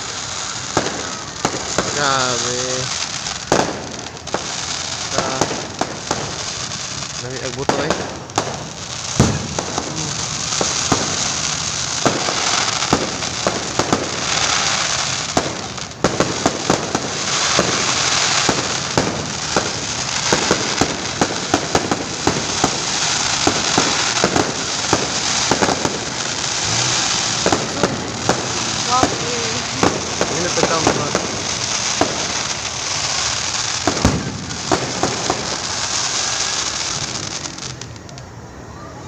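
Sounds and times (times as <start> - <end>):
crackling hiss: 0.0 - 39.0
fireworks banging: 0.0 - 39.0.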